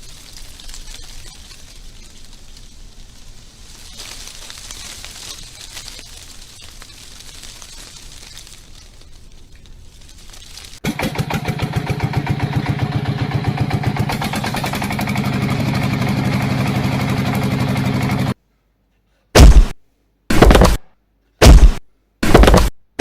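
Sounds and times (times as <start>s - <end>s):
diesel engine chugging: 10.8s - 18.4s
short loud engine bursts: 10.8s - 18.4s.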